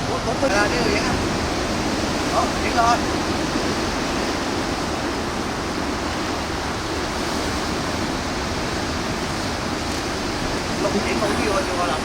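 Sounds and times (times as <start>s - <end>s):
surf breaking on beach: 0.0s - 12.0s.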